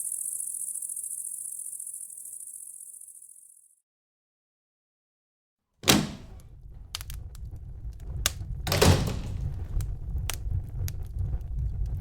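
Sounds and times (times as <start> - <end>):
wooden door thuds: 5.8 - 6.9, 8.6 - 9.7
fireplace crackling and popping: 6.2 - 12.0.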